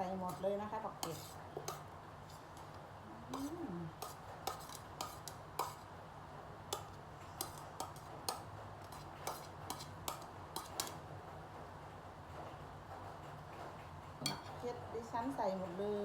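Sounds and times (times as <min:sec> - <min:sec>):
chillies scraped into dish: 0:00.3 - 0:02.7, 0:03.3 - 0:05.9, 0:06.7 - 0:11.0
metal utensil clinking against a dish: 0:14.2 - 0:14.6.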